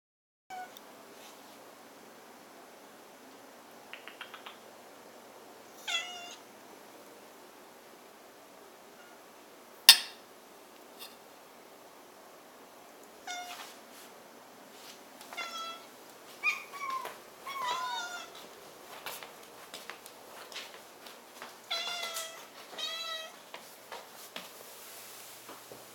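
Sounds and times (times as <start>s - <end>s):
cats meowing: 5.8s - 6.4s, 13.3s - 13.6s, 15.3s - 18.4s, 21.6s - 23.4s.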